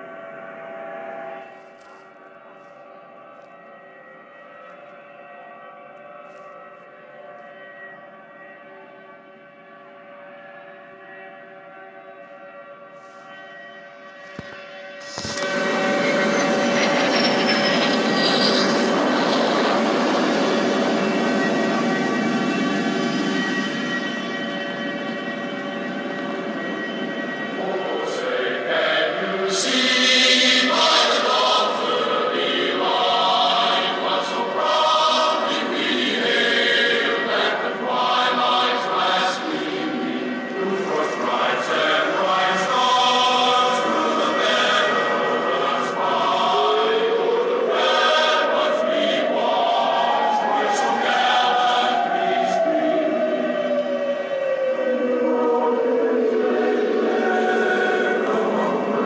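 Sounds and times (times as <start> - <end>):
choir singing chords: 0.0 - 59.0
rising and falling siren-like tone: 14.4 - 29.4, 46.6 - 59.0.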